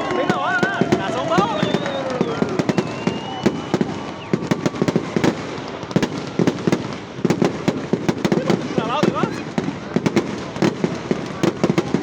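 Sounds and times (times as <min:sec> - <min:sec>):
fireworks bangs and pops: 0:00.0 - 0:12.0.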